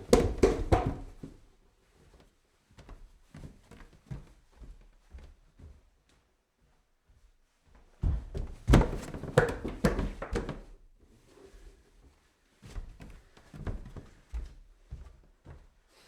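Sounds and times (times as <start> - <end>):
heavy footsteps on stairs: 0.0 - 1.4, 7.1 - 10.8.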